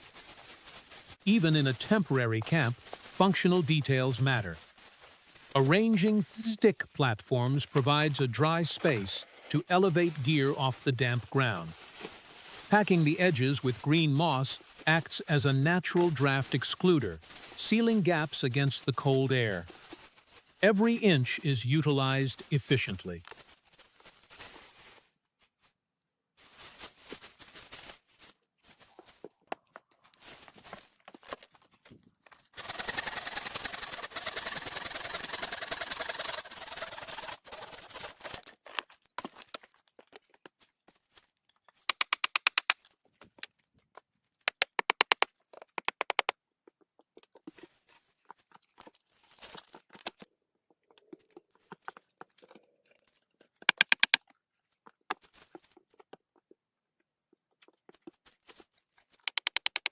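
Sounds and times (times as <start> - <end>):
sticks rustling and scraping: 0.0 - 25.8, 26.4 - 44.3, 47.2 - 50.3, 57.7 - 59.9
sharp rapid clicks: 32.6 - 38.4, 41.9 - 42.8, 44.5 - 46.3, 53.7 - 54.2, 59.3 - 59.9.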